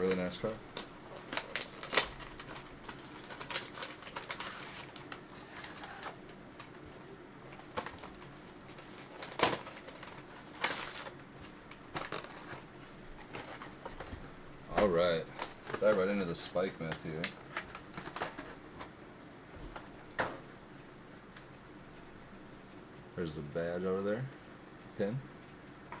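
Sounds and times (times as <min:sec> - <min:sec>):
packaging crinkling and clicking: 0:00.0 - 0:14.2, 0:14.8 - 0:18.9.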